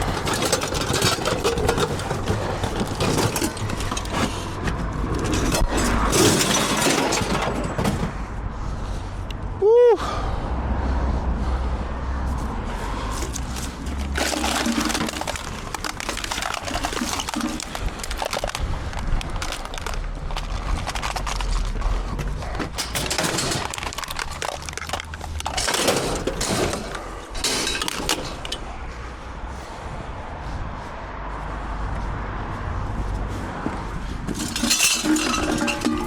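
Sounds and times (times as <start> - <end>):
scrap metal clattering: 0.0 - 8.4, 12.3 - 28.8, 34.0 - 36.0.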